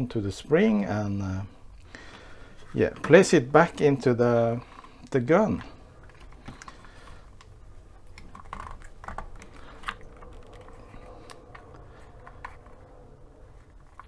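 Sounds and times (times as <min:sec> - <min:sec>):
small parts clicking and tapping: 0:01.8 - 0:12.9.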